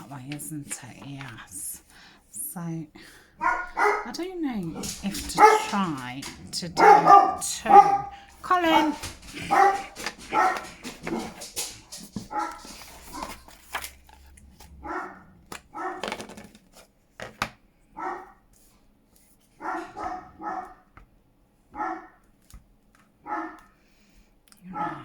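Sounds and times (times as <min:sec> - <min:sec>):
dog barking: 0:03.4 - 0:04.1, 0:04.7 - 0:06.0, 0:06.7 - 0:11.4, 0:12.3 - 0:13.4, 0:14.8 - 0:16.0, 0:18.0 - 0:18.4, 0:19.6 - 0:20.9, 0:21.8 - 0:22.2, 0:23.2 - 0:23.7, 0:24.7 - 0:25.0
paper rustling: 0:03.9 - 0:17.5.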